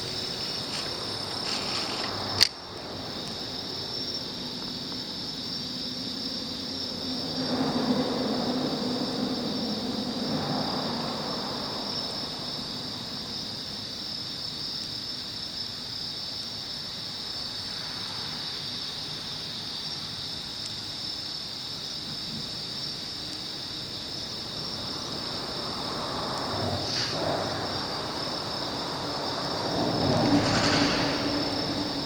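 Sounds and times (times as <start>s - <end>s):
train rumbling: 0.0s - 4.0s, 23.9s - 32.0s
night insects chorus: 0.0s - 32.0s.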